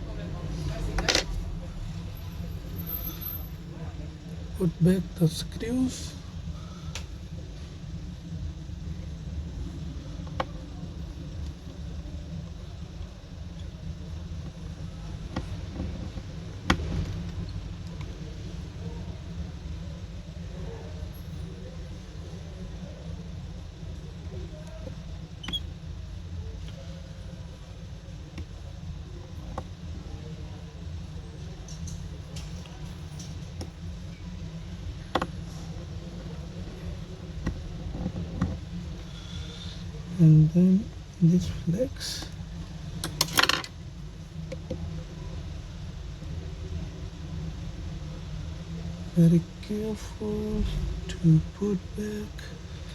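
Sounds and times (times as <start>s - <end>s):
steady low rumble: 0.0s - 52.9s
low hum: 43.8s - 52.9s.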